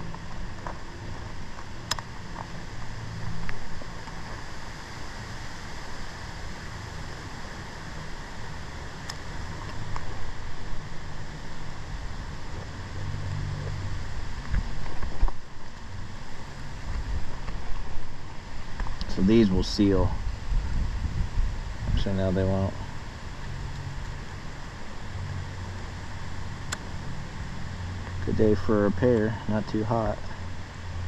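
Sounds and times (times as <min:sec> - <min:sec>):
outdoor rumble: 0:00.0 - 0:31.0
wind noise on microphone: 0:09.4 - 0:26.6.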